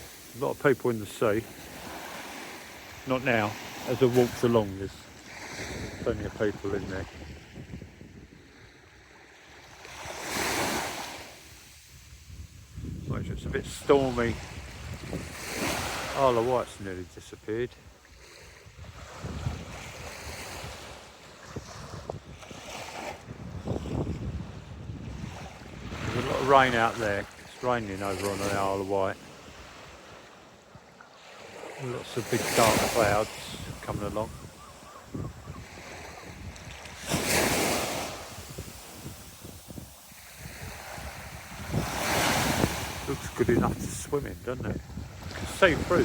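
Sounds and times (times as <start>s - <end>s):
sea waves breaking on beach: 0.0s - 46.0s
wind rumbling on microphone: 4.3s - 8.7s, 11.5s - 16.2s, 18.6s - 28.6s, 32.6s - 46.0s.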